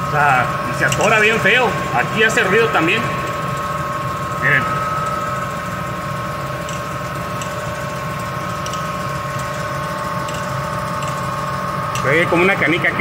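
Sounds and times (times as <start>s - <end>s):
truck running hum: 0.0s - 13.0s.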